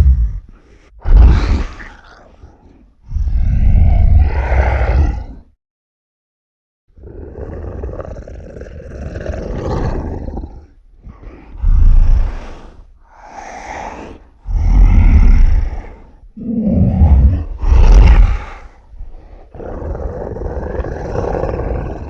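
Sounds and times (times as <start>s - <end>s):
monster roars: 0.0s - 0.4s, 1.0s - 5.5s, 14.5s - 18.8s, 19.4s - 22.0s
monster growl-roar: 0.0s - 5.5s, 7.0s - 22.0s.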